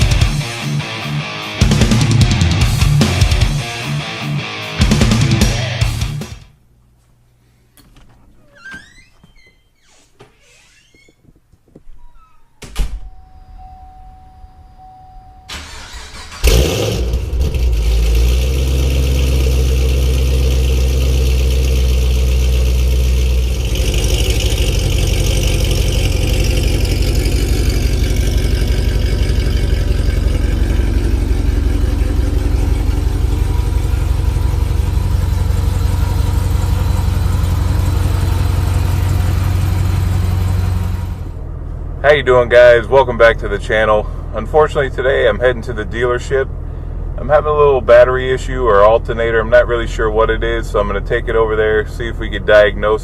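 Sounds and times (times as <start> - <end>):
car engine starting and idling: 0.0 - 6.4, 13.1 - 53.0
short electronic tone: 13.1 - 15.6.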